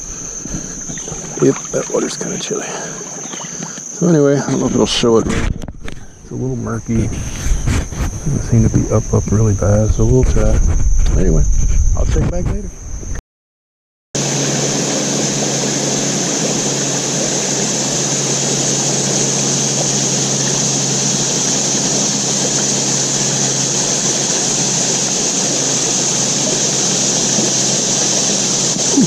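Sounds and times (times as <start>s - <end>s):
river water flowing: 0.0s - 5.2s, 14.2s - 29.0s
high-pitched insect drone: 0.0s - 13.0s, 14.2s - 29.0s.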